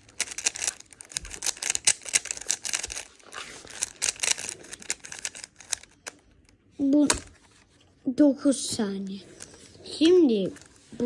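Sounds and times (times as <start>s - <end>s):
speed cube clicking: 0.0s - 6.2s.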